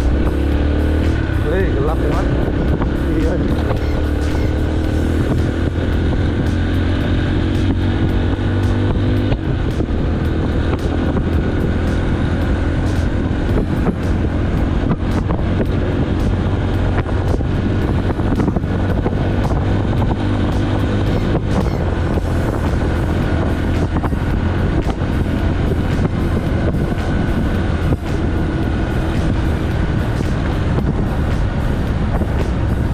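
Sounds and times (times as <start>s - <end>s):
vehicle engine droning: 0.0s - 32.9s.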